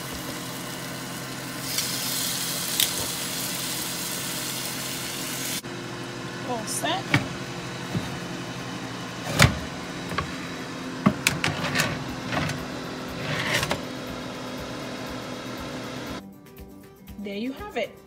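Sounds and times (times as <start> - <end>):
appliance hum: 0.0 - 16.2.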